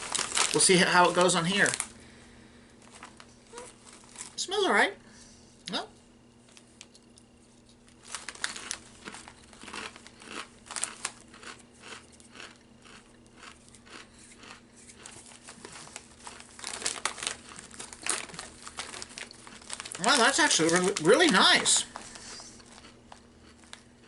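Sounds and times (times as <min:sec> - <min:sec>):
chip bag crinkling: 0:00.0 - 0:02.0, 0:02.8 - 0:04.4, 0:06.4 - 0:24.0
chip crunching and chewing: 0:06.5 - 0:24.0.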